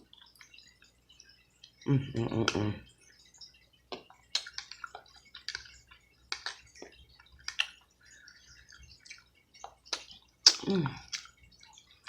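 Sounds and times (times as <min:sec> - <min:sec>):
wet chewing and lip smacking: 0:03.4 - 0:12.0.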